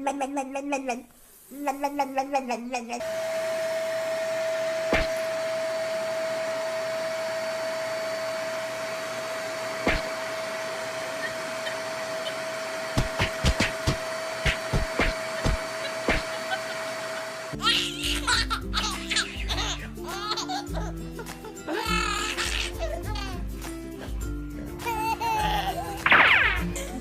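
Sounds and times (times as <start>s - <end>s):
electric motor whining: 3.0s - 17.6s
sharp knocks: 13.0s - 16.3s.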